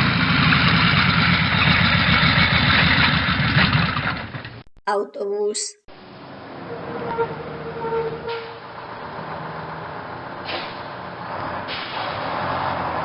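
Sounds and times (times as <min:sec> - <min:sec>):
bus engine whine: 0:06.0 - 0:13.0.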